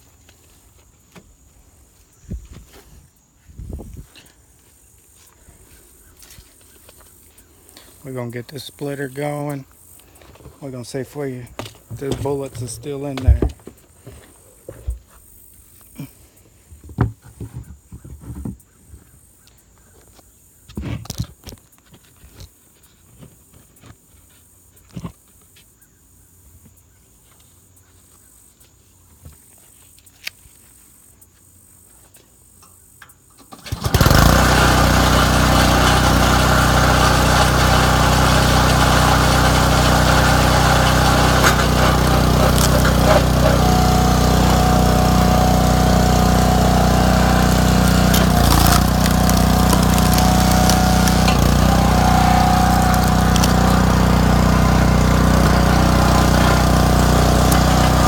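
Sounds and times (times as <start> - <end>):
log splitter engine running: 33.5 - 58.0.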